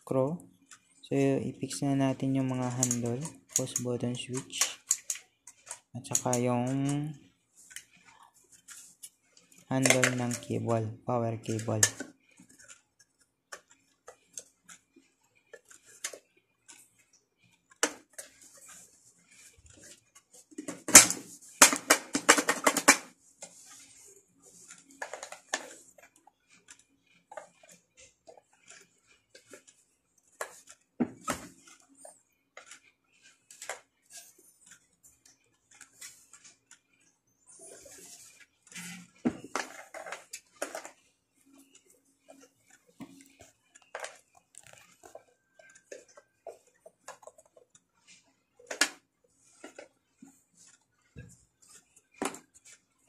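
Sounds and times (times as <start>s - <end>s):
plastic parts clicking and clattering: 0.3s - 53.0s.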